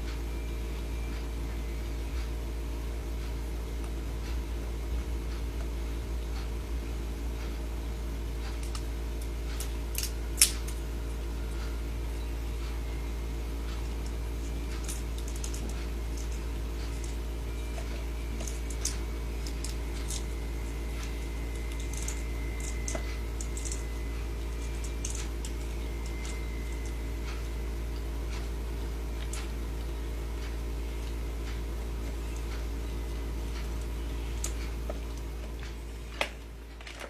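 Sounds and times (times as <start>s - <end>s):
steady low hum: 0.0s - 37.0s
crab claws clicking: 9.5s - 10.8s, 14.4s - 27.0s.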